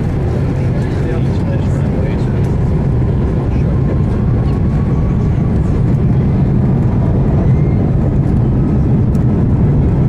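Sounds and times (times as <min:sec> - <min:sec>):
jet engines rumbling in cabin: 0:00.0 - 0:10.0.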